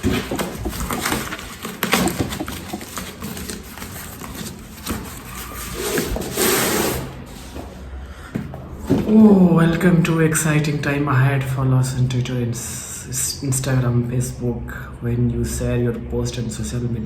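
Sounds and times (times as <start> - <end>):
clicks and taps on cardboard: 0.0 - 5.0
cardboard rustling scrape: 0.0 - 8.0.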